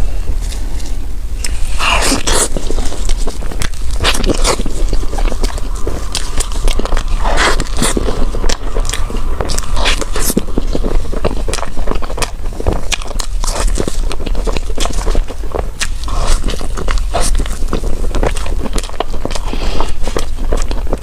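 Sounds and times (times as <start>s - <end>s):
food crunching and chewing: 0.0s - 21.0s.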